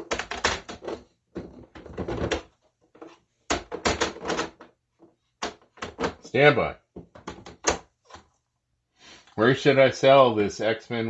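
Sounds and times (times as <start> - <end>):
hard plastic cases clacking: 0.0 - 8.3.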